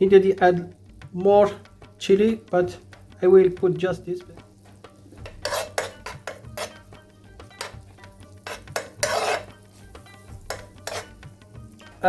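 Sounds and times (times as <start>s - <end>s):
utensil stirring in a pan: 4.2s - 12.0s.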